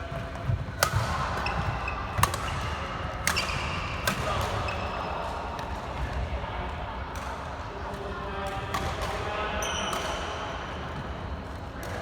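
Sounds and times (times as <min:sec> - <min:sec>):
sports hall hubbub: 0:00.0 - 0:12.0
rackets hitting shuttlecock: 0:00.4 - 0:05.0, 0:08.4 - 0:10.3.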